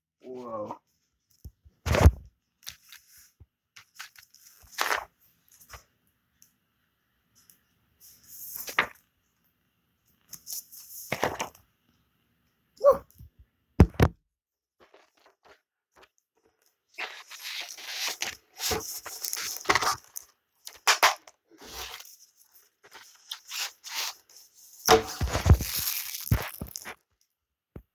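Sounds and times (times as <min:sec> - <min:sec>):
packaging tearing and crinkling: 0:03.9 - 0:05.1, 0:17.0 - 0:22.2, 0:24.9 - 0:27.0.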